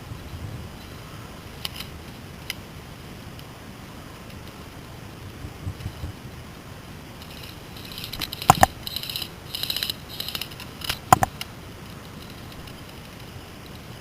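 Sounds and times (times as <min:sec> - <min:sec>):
sharp snaps: 0:08.2 - 0:08.9, 0:10.9 - 0:11.5.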